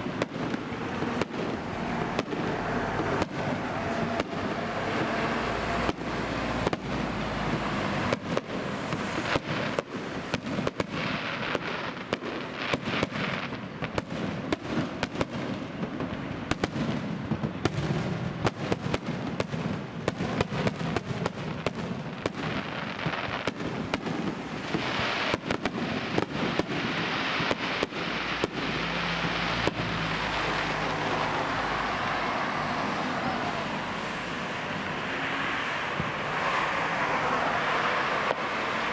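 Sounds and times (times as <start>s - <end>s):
fireworks bangs and crackles: 0.0s - 38.9s
background rumble: 23.7s - 38.9s.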